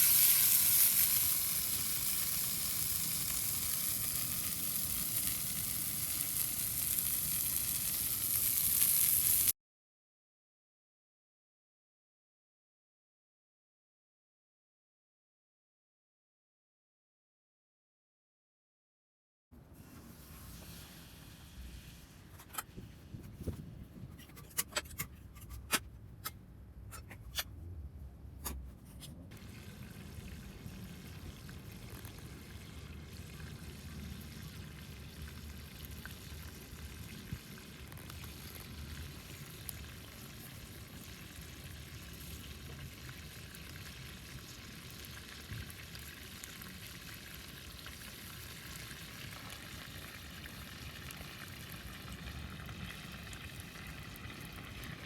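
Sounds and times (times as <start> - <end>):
food sizzling in a pan: 0.0 - 9.5.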